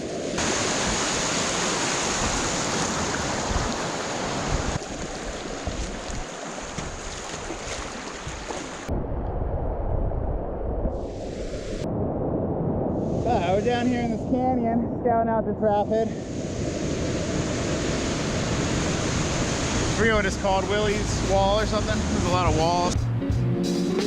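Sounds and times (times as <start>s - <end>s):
rushing river water: 0.0s - 8.9s, 16.2s - 23.0s.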